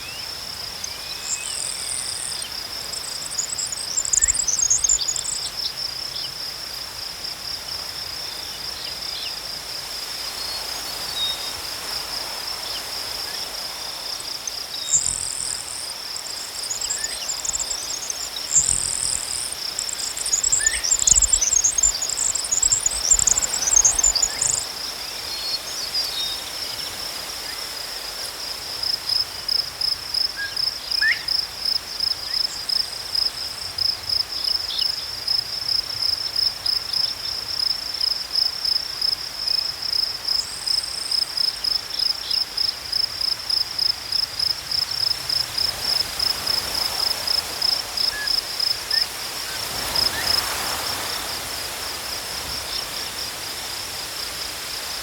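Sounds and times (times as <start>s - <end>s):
crickets chirping: 0.0s - 55.0s.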